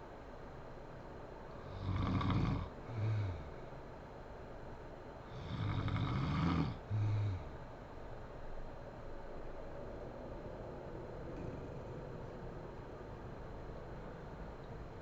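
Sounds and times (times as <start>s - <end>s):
woman snoring: 1.6s - 3.5s, 5.3s - 7.6s.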